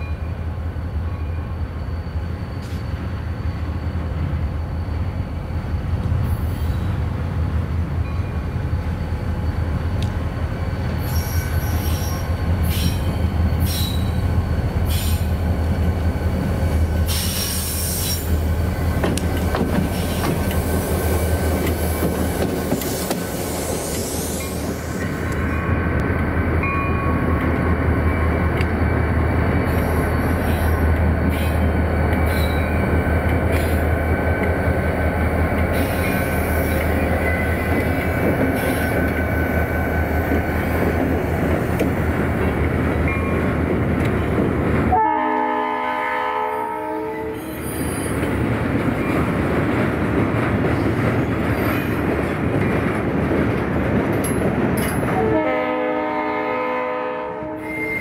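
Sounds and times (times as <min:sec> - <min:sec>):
diesel locomotive engine rumble: 0:00.0 - 0:58.0
locomotive horn: 0:44.9 - 0:47.4, 0:55.1 - 0:58.0.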